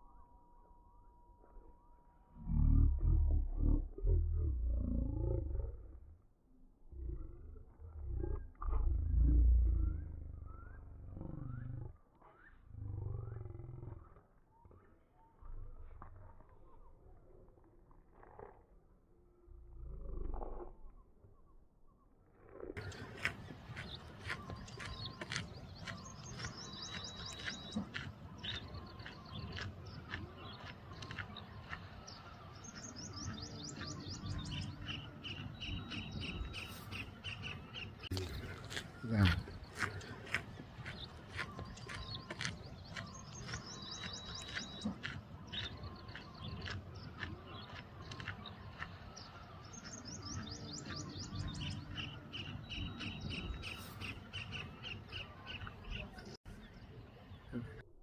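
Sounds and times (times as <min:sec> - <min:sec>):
small birds chirping: 0:22.8 - 0:57.8.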